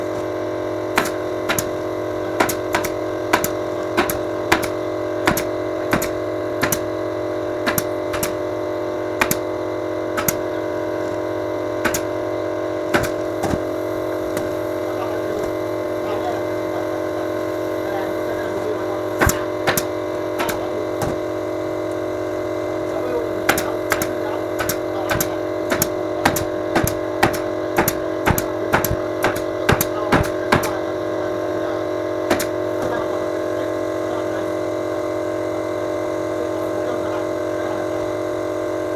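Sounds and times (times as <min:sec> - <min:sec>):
steady hum: 0:00.0 - 0:38.9
staple gun firing: 0:01.0 - 0:01.8, 0:02.4 - 0:06.9, 0:07.6 - 0:08.4, 0:09.2 - 0:09.4, 0:10.2 - 0:10.4, 0:11.8 - 0:12.1, 0:12.9 - 0:13.6, 0:19.2 - 0:21.2, 0:23.5 - 0:30.8, 0:32.3 - 0:32.5.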